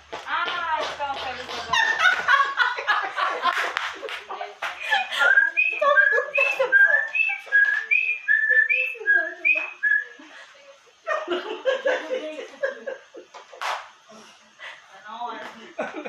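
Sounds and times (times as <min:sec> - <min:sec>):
person whistling short notes: 0:05.2 - 0:10.1.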